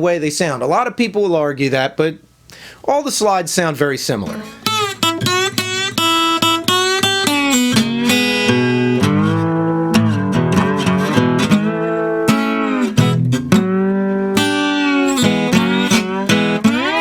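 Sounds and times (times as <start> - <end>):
slide acoustic guitar: 4.2 - 17.0.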